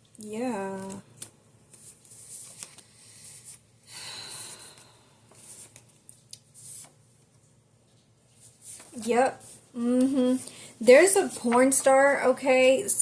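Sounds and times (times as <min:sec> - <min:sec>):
cards rustling and sliding: 0:00.8 - 0:03.6, 0:05.3 - 0:07.0.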